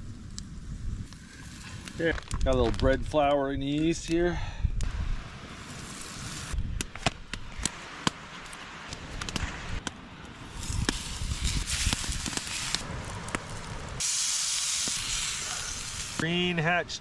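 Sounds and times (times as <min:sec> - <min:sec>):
fire crackling and popping: 0:00.0 - 0:17.0
food sizzling: 0:05.0 - 0:06.6, 0:10.5 - 0:16.7.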